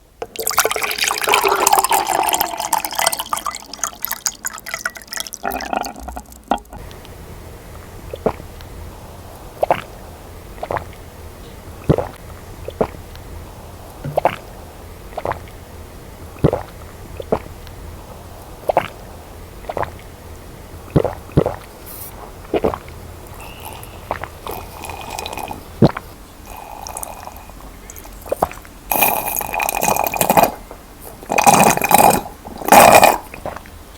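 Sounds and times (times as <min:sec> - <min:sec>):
soft gulping swallows: 0:07.8 - 0:30.6
baby sucking on a bottle: 0:08.1 - 0:08.5, 0:09.6 - 0:10.0, 0:10.6 - 0:11.0, 0:11.8 - 0:13.0, 0:14.0 - 0:15.6, 0:16.4 - 0:17.6, 0:18.6 - 0:19.0, 0:19.6 - 0:20.0, 0:20.9 - 0:27.5.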